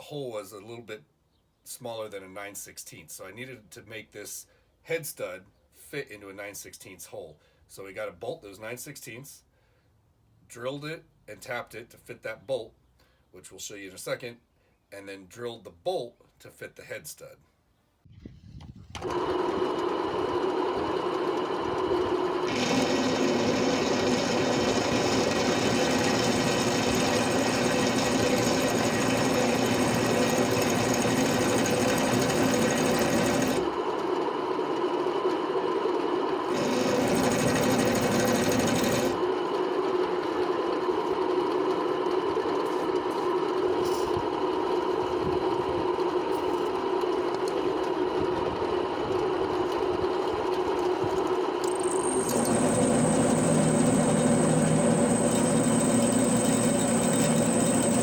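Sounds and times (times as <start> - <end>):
electric drill drilling metal: 22.5 - 33.7, 36.5 - 39.2, 51.6 - 58.0.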